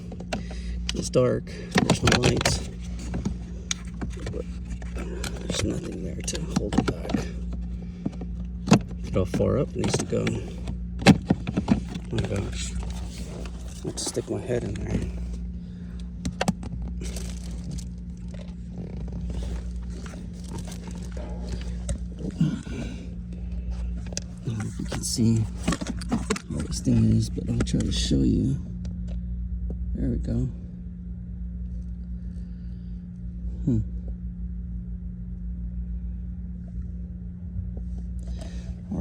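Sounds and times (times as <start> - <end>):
car engine idling: 0.0 - 28.6
steady low hum: 0.0 - 39.0
plastic scraping and rustling: 1.7 - 15.4, 16.2 - 27.8
man grunting: 22.2 - 23.1, 33.6 - 34.0.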